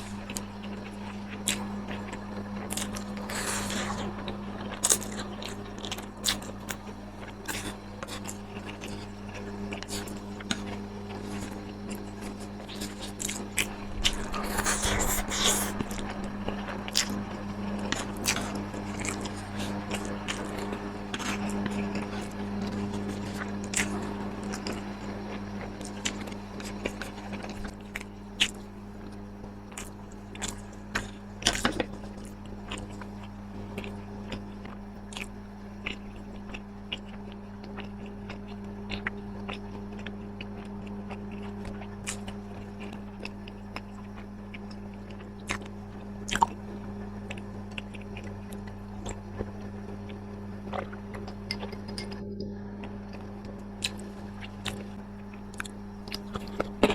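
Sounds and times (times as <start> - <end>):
chewing and crunching food: 0.0 - 56.9
steady low hum: 0.0 - 56.9.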